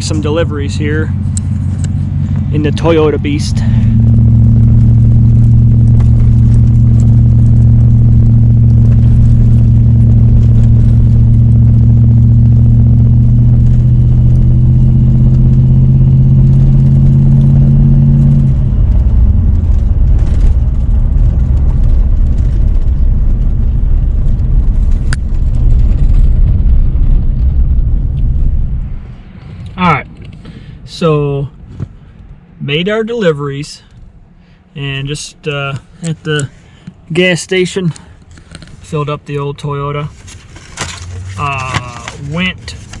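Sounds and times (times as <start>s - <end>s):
uneven low rumble: 0.0s - 39.3s
vehicle engine hum: 0.0s - 43.0s.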